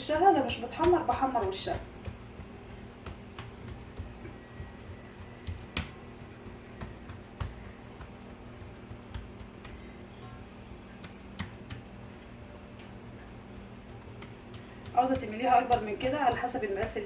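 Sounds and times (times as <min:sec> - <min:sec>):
faint low hum: 0:00.0 - 0:17.0
hands pressing dough in metal tray: 0:00.0 - 0:17.0.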